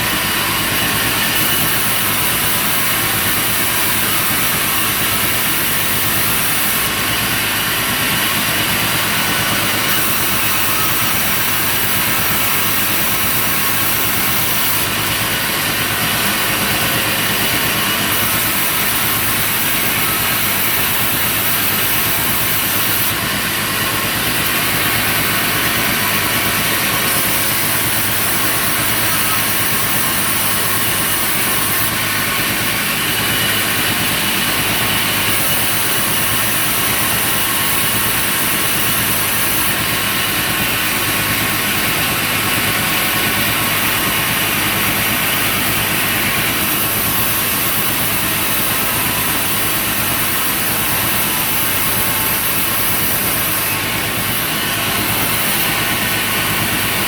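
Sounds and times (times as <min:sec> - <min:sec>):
high hiss of sawing: 0:00.0 - 0:57.0
sawmill machinery motor drone: 0:00.0 - 0:57.0.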